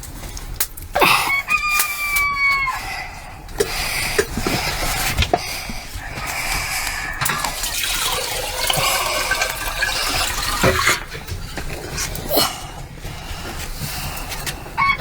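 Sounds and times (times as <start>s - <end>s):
water rushing or pouring: 7.2s - 11.3s.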